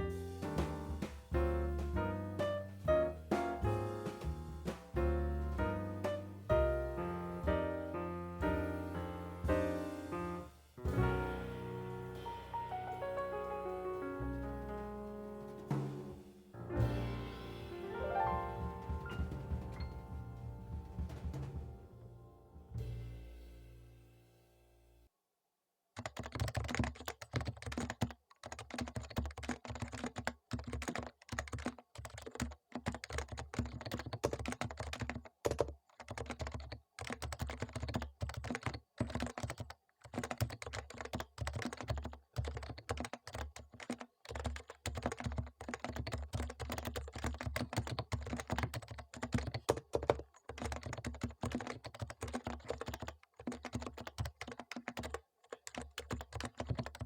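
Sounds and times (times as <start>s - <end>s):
soft keyboard typing: 26.0s - 57.0s.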